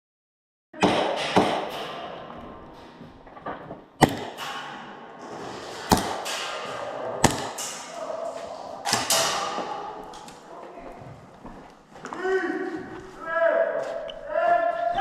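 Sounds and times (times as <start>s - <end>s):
airsoft gun shots echoing: 0.8s - 2.2s, 4.0s - 5.0s, 5.8s - 8.2s, 8.8s - 10.5s.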